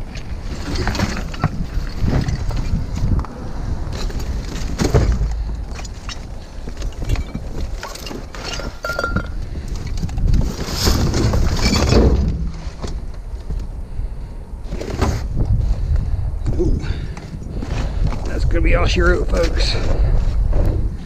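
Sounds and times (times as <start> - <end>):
wind rumbling on microphone: 0.0 - 21.0
scrap metal clattering: 4.0 - 9.4.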